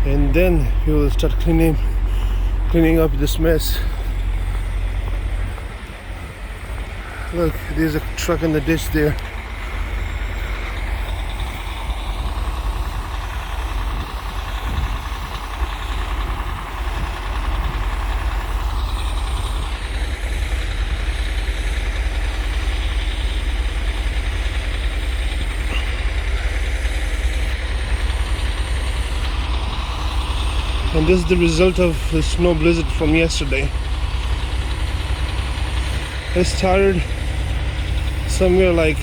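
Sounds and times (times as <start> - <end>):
truck engine idling: 0.0 - 39.0.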